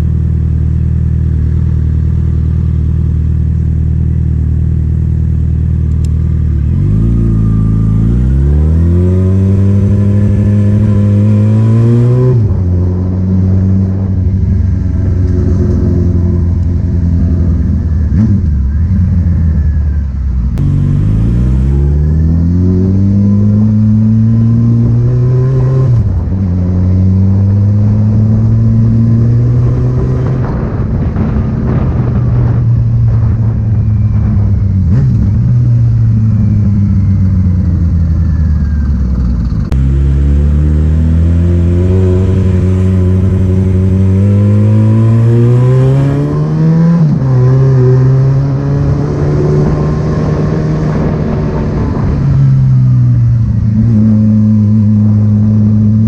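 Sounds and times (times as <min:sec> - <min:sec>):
loud vehicle engine accelerating: 0:00.0 - 0:56.0.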